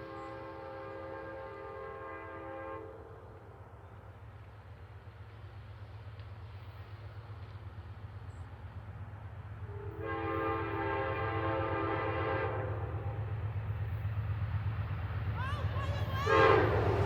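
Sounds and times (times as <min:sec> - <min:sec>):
train air horn chord: 0:00.0 - 0:03.4, 0:09.7 - 0:13.2, 0:16.2 - 0:17.0
diesel locomotive rumble: 0:00.0 - 0:17.0.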